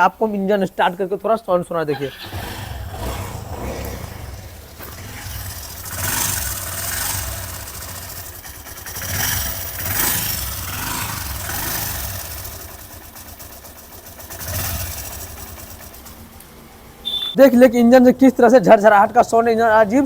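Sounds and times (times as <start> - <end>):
harsh rattling from engine: 1.9 - 16.4
motorcycle engine running: 2.1 - 17.4.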